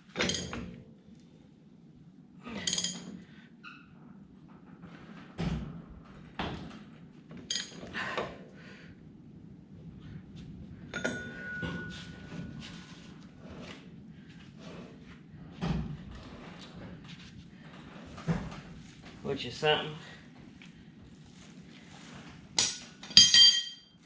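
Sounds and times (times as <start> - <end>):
tools clinking on metal parts: 0.2 - 0.7, 2.6 - 3.2, 7.5 - 7.9, 10.9 - 11.9, 22.6 - 24.0.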